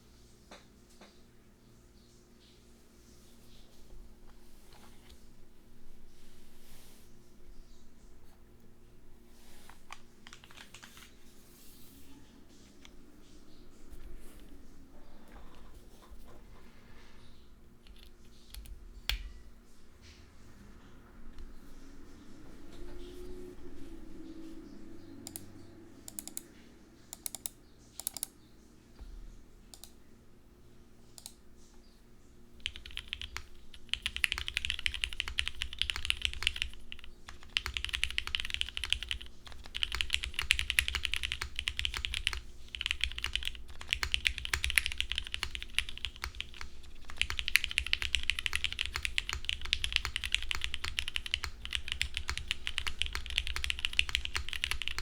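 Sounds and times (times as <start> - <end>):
mechanical keyboard typing: 9.9 - 11.1, 26.1 - 26.5, 27.2 - 28.4, 32.6 - 55.0.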